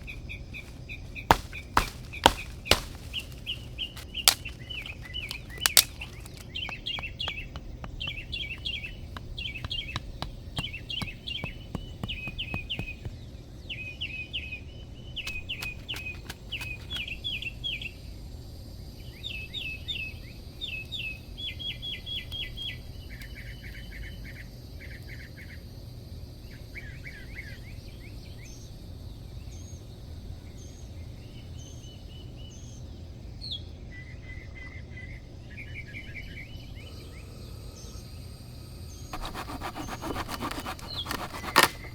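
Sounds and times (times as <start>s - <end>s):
sharp knocks: 0.0s - 13.1s
small birds chirping: 0.0s - 17.5s, 30.5s - 41.9s.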